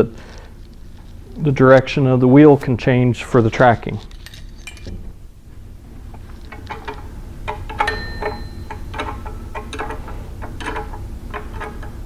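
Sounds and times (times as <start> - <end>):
wrench clicking: 6.4 - 12.0
brief metallic ring: 7.8 - 8.8.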